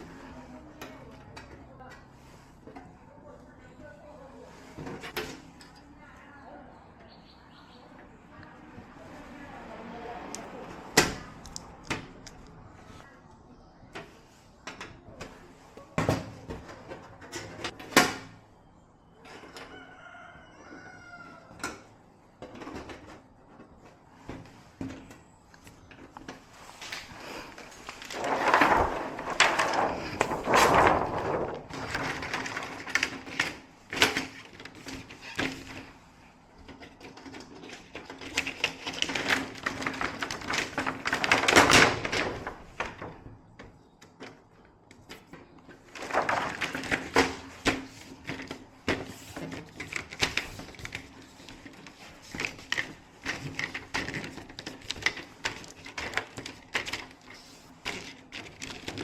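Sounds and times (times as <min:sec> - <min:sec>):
rustling and scraping: 0:22.4 - 0:43.2, 0:45.0 - 0:59.0.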